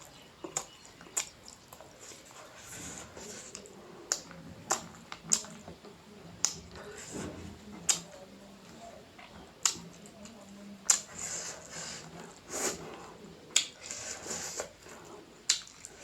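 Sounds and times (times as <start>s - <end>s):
person chewing: 0.0s - 5.7s, 9.2s - 16.0s
wet mouth smacks and clicks: 15.5s - 15.9s.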